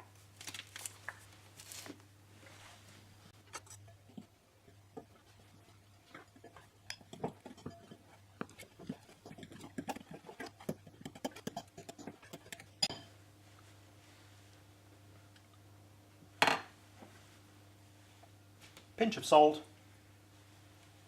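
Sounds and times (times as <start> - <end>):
faint steady hum: 0.0 - 21.0
spoon clinking against bowl: 6.4 - 8.6, 10.6 - 13.1.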